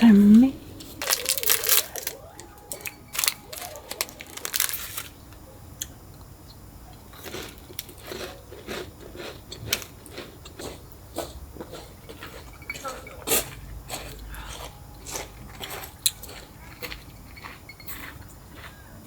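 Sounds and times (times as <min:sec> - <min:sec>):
dog crunching food: 0:01.0 - 0:05.9, 0:06.9 - 0:12.5, 0:15.1 - 0:18.8.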